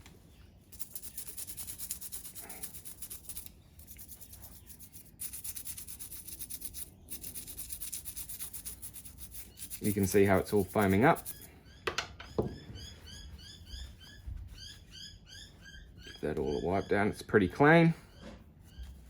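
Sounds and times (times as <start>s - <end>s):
toothbrush scrubbing metal: 0.7s - 11.5s.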